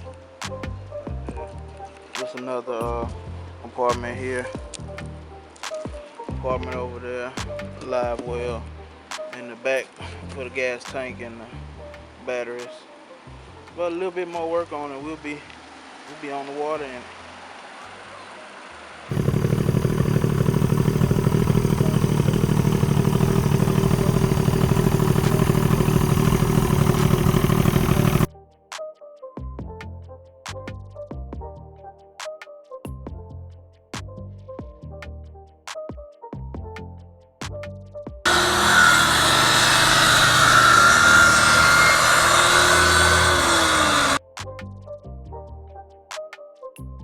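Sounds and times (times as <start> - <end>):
outboard motor running: 19.1 - 28.3, 38.3 - 44.2.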